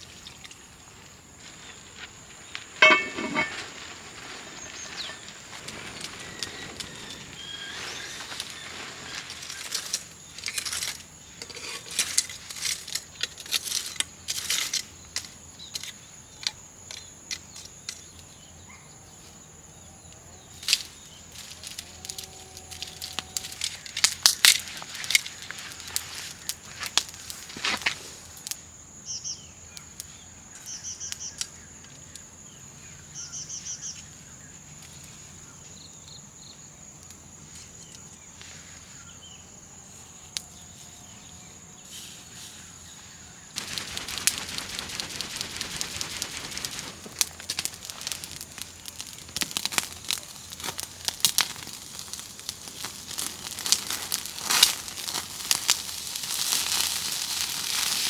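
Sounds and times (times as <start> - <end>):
food sizzling over campfire: 0.9 - 15.5, 20.9 - 28.8, 43.6 - 58.0.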